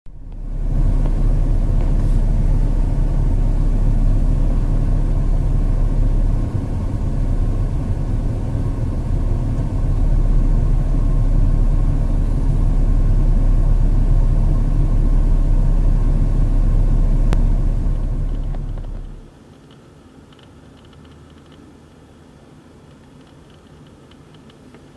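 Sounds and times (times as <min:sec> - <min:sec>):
low rumble of vehicle engines: 0:00.1 - 0:19.4.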